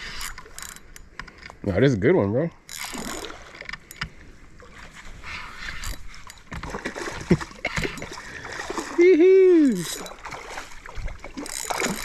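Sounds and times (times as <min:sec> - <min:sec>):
knocks and clicks from boat: 0:00.2 - 0:01.8, 0:02.7 - 0:08.9, 0:09.7 - 0:12.0
water splashing beside boat: 0:02.6 - 0:12.0.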